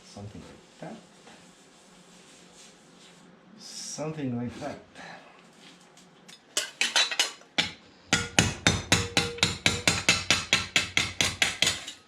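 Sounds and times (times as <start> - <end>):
hammer striking sheet steel: 7.6 - 12.0.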